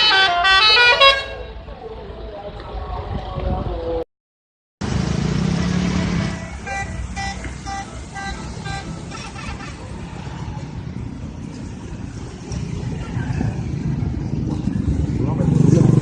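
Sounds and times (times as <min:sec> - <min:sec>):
bus musical horn toots: 0:00.0 - 0:01.6, 0:05.8 - 0:09.7
bus engine rumbling: 0:04.8 - 0:16.0.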